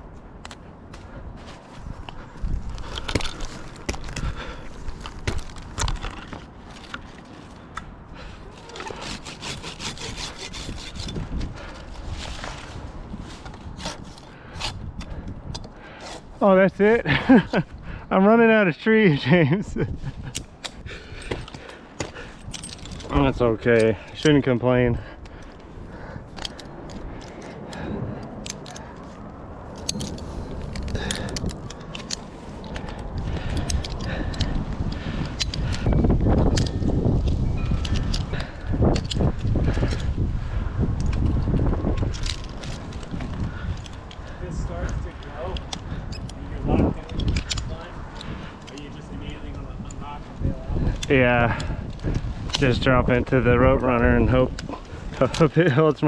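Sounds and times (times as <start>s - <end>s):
hand saw cutting branch: 8.4s - 11.3s, 13.6s - 16.5s
carabiners clinking and jangling: 20.2s - 25.7s, 26.3s - 29.1s, 29.7s - 34.6s, 35.2s - 40.0s, 47.0s - 50.2s.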